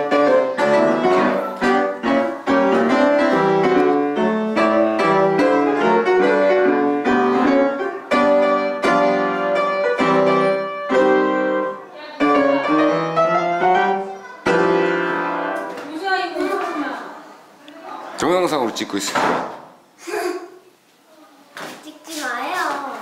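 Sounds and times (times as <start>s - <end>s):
piano music: 0.0s - 15.8s.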